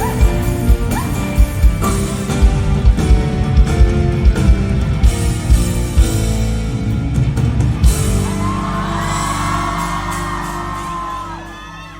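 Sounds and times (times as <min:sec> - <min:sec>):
rock band playing: 0:00.0 - 0:11.9.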